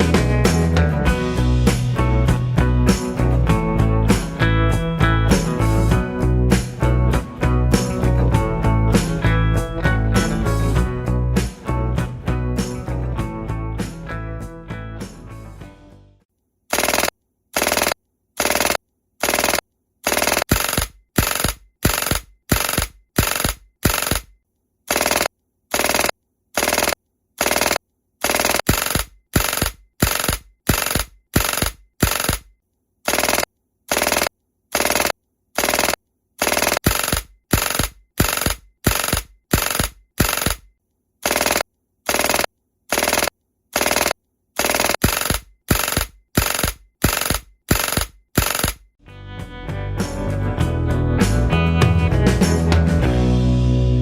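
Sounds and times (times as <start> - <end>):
airsoft pistol shots: 33.1 - 40.6, 41.3 - 48.8.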